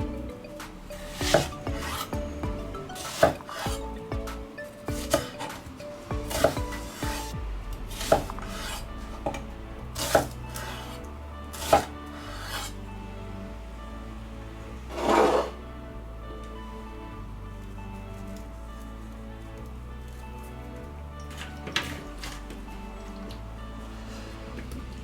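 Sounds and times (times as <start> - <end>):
soft background music: 0.0 - 25.0
knife scraping board: 15.0 - 15.5.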